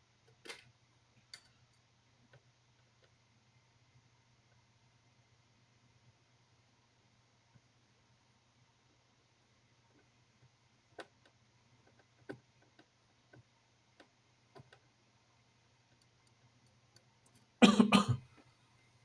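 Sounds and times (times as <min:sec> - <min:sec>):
low steady hum: 0:13.5 - 0:19.0.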